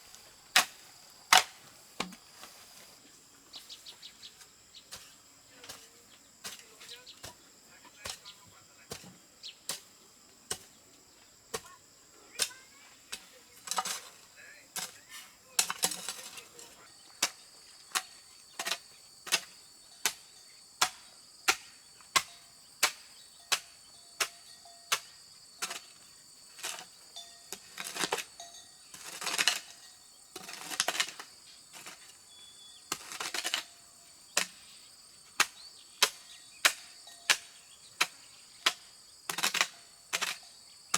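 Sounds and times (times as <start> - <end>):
insects calling: 0.0 - 40.9
scraping: 13.5 - 19.5, 25.6 - 29.8, 30.4 - 32.2.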